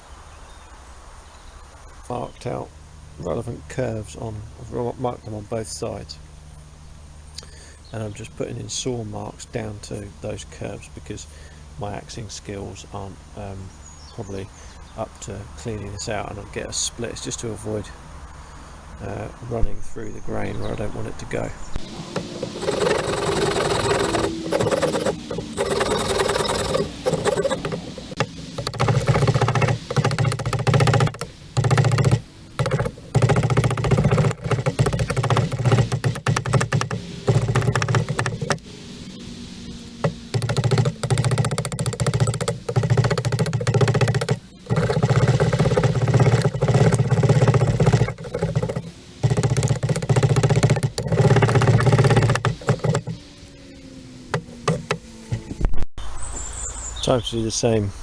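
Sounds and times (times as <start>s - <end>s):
saw rasping through wood: 21.8s - 53.6s, 54.2s - 55.6s.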